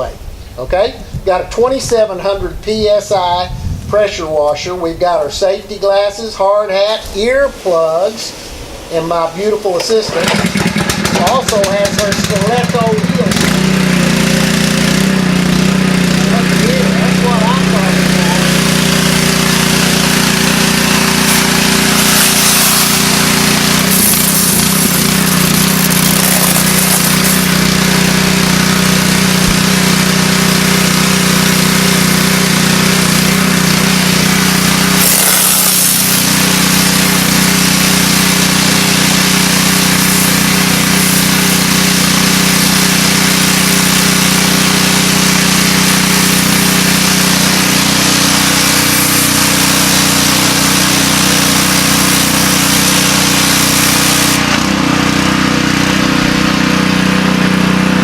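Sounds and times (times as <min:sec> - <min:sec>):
pressure washer engine hum: 0:00.0 - 0:58.0
high-pressure water spray hiss: 0:07.4 - 0:54.5.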